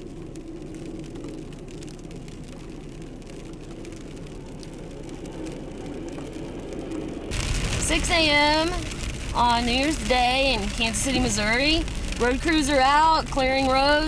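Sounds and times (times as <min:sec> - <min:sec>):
truck engine humming: 0:05.4 - 0:14.0.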